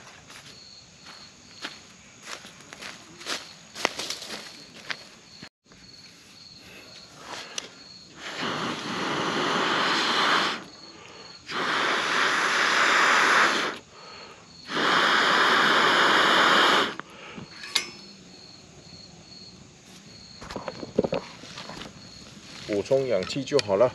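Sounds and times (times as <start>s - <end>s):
blowing air into fire: 7.1s - 17.7s.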